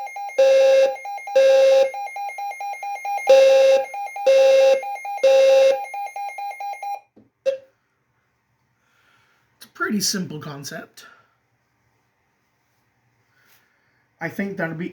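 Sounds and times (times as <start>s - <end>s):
rapid high-pitched beeping: 0.0s - 7.0s
fire alarm low tone blasts: 0.0s - 7.7s.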